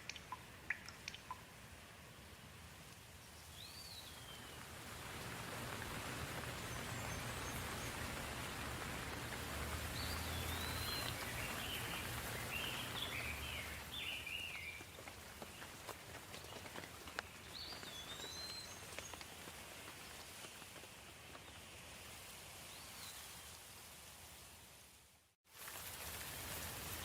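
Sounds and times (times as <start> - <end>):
soft rain falling: 0.0 - 27.0
bird chirping: 10.0 - 14.8.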